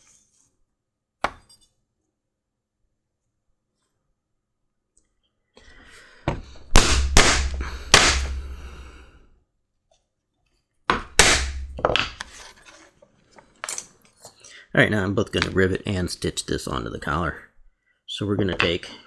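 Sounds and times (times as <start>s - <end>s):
mallet striking leather punch: 6.7s - 8.7s, 10.9s - 12.2s.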